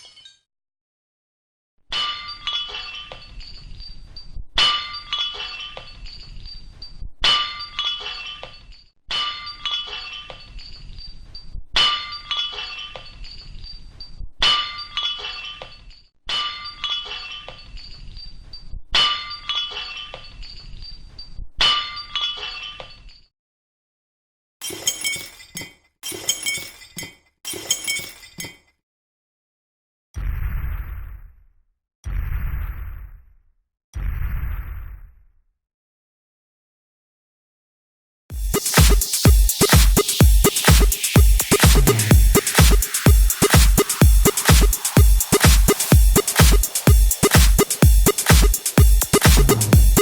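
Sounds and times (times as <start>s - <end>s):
glass breaking: 24.6s - 28.7s.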